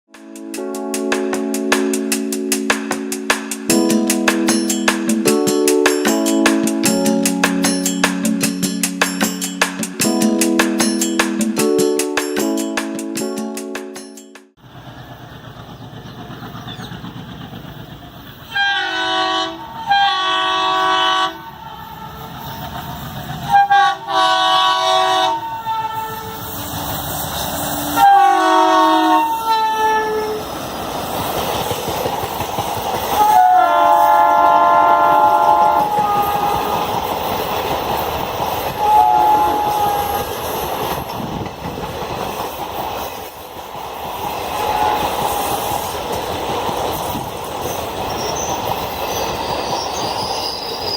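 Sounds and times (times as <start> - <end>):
train coaches rumbling past: 0.2 - 50.9
train air horn blasts: 18.5 - 22.4, 23.5 - 26.6, 27.6 - 30.5, 33.2 - 37.0, 38.8 - 40.4, 44.6 - 45.8.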